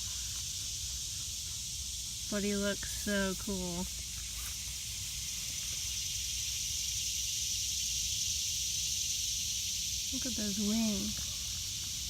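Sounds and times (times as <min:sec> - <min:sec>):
insect chorus hissing: 0:00.0 - 0:12.0.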